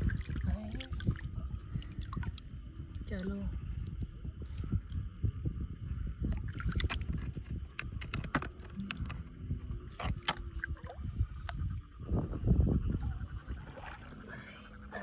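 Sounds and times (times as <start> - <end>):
water sloshing and splashing: 0.0 - 3.9, 6.2 - 11.9, 12.8 - 15.0.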